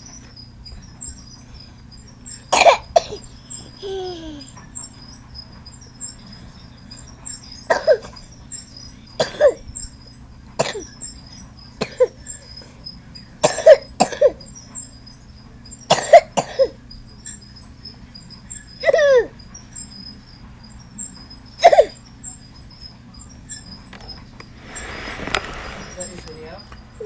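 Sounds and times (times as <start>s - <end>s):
toddler fake coughing: 2.5s - 4.6s, 7.7s - 8.2s, 9.2s - 9.6s, 10.6s - 10.9s, 11.8s - 12.2s, 13.4s - 14.5s, 15.9s - 16.8s, 18.8s - 19.3s, 21.6s - 22.0s.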